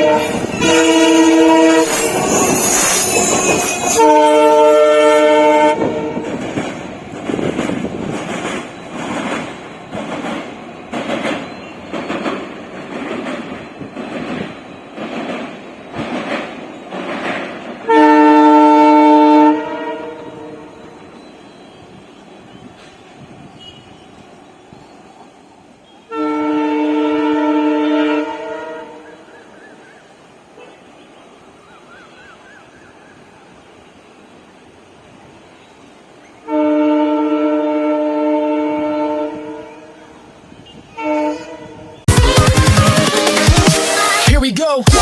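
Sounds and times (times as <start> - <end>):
locomotive air horn blasts: 0.0 - 6.4, 17.8 - 21.2, 26.0 - 29.3, 36.4 - 44.3
passing train rushing and clattering: 0.0 - 31.6, 33.2 - 45.0.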